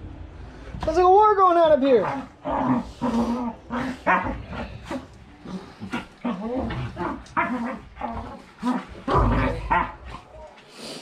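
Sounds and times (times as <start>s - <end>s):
dogs barking: 2.0s - 10.2s
dogs growling: 2.0s - 10.4s.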